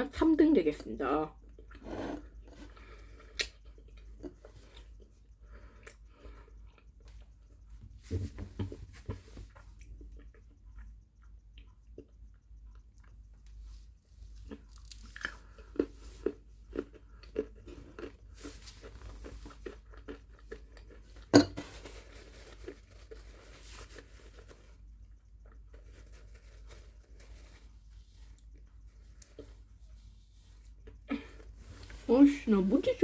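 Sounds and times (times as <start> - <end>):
crunchy chewing: 9.2 - 32.4.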